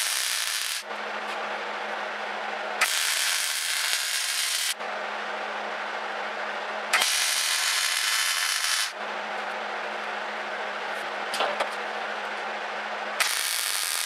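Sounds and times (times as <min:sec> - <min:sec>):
welding arc crackling: 0:00.0 - 0:00.9, 0:02.8 - 0:04.8, 0:07.0 - 0:09.0, 0:13.2 - 0:14.0.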